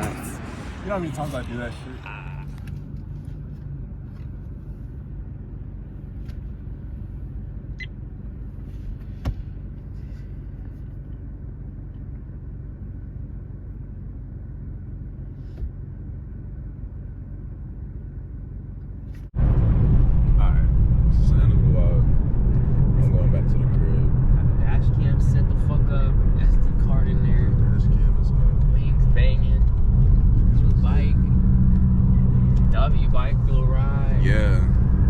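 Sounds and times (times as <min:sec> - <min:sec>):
loud rumble: 0:00.0 - 0:02.7, 0:19.4 - 0:35.0
car rumbling on the move: 0:00.0 - 0:35.0.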